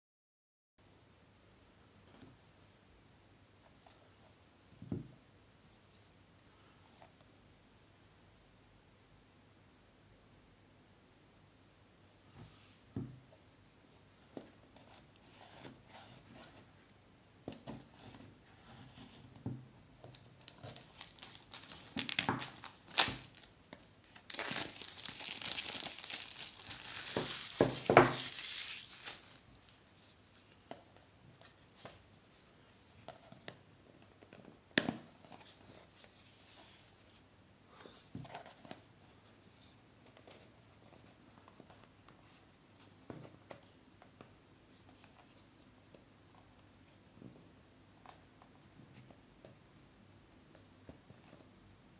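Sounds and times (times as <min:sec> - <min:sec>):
packaging tearing and crinkling: 0:20.4 - 0:23.5, 0:24.1 - 0:29.4.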